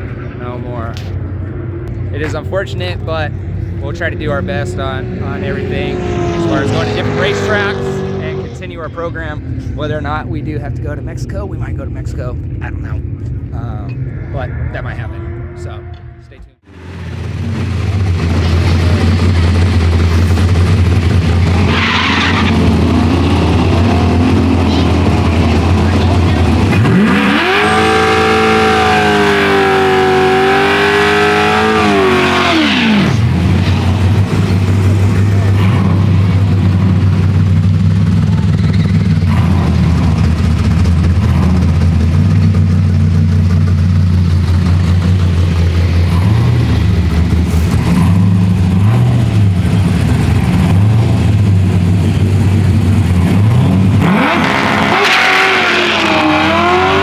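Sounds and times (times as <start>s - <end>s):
low engine idling: 0.0s - 21.7s, 33.1s - 54.1s
car engine revving: 0.0s - 57.0s.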